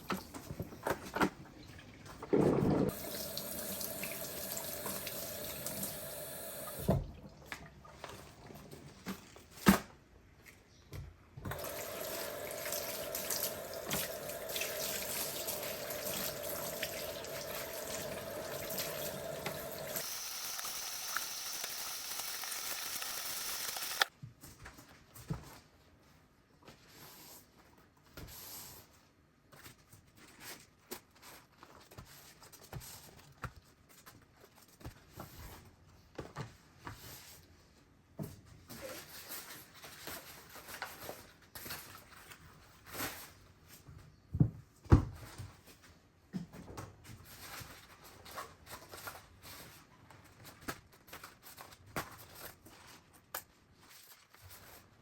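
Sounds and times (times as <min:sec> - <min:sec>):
tap running into a sink: 0:11.5 - 0:20.1.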